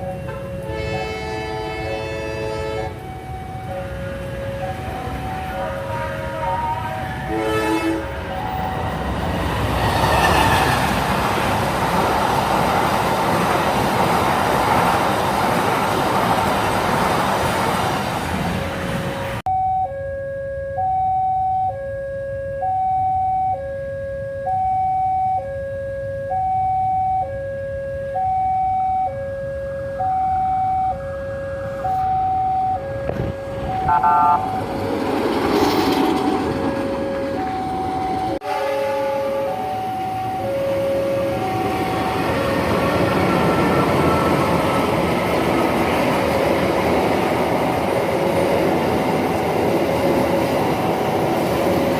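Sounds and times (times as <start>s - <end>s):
train horn: 0.0s - 3.0s, 5.5s - 8.4s, 33.8s - 34.6s, 38.4s - 42.2s
train rolling past: 0.0s - 19.4s, 33.1s - 51.9s
approaching train: 0.0s - 19.5s, 29.9s - 51.9s
level crossing alarm two-tone: 1.7s - 7.4s, 8.2s - 9.0s, 19.5s - 33.0s, 33.6s - 34.7s.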